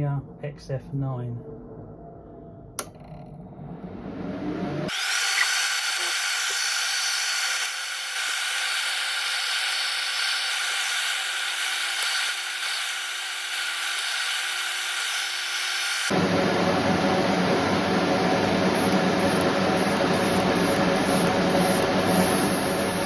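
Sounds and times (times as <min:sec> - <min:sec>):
airbrush spraying hiss: 0:04.9 - 0:16.1, 0:18.8 - 0:23.0.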